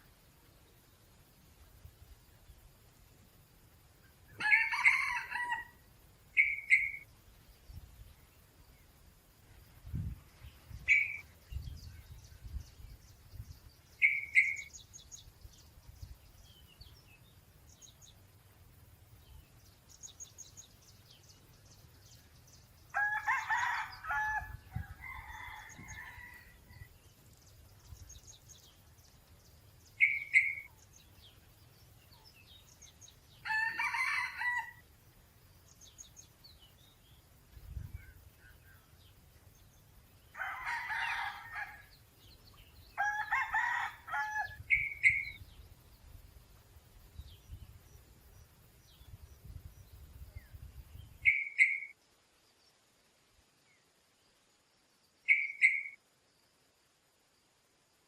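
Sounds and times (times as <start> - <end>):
small birds chirping: 3.7 - 56.0
rooster crowing: 4.4 - 5.8, 23.0 - 26.9, 33.4 - 34.8, 40.4 - 41.9, 43.0 - 44.7.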